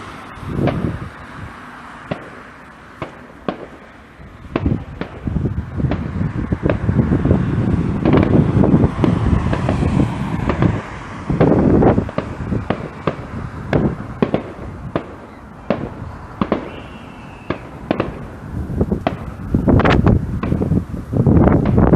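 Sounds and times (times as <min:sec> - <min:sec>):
fireworks bangs and crackling: 0:00.0 - 0:21.9
faint firework whistle: 0:15.0 - 0:18.6.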